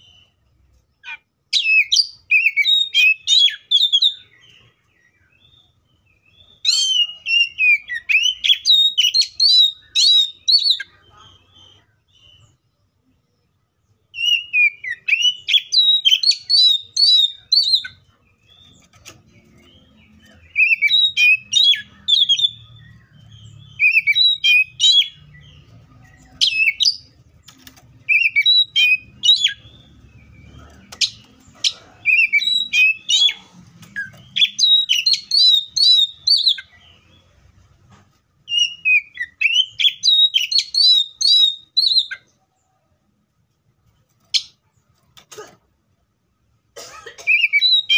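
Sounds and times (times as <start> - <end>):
bird singing whistled notes: 1.0 - 12.6, 14.1 - 18.8, 19.6 - 27.2, 28.0 - 31.3, 32.0 - 37.2, 38.4 - 42.3, 47.3 - 47.9.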